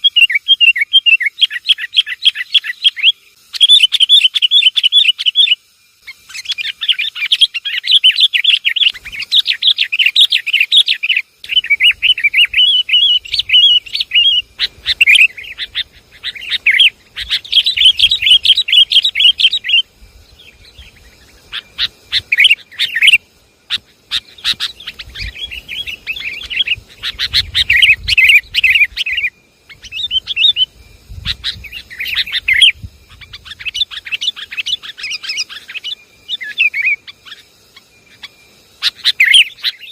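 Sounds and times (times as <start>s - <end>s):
bulbuls chattering: 8.5s - 39.9s.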